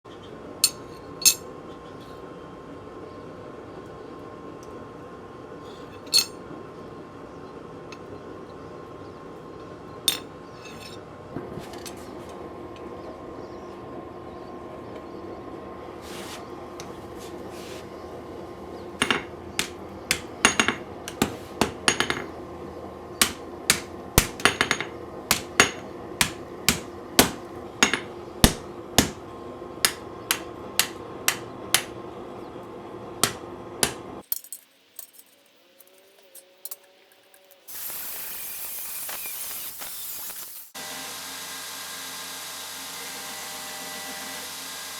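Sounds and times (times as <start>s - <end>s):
constant background hum: 0.1s - 37.7s
hammer ringing on anvil: 19.0s - 22.3s, 23.2s - 29.2s.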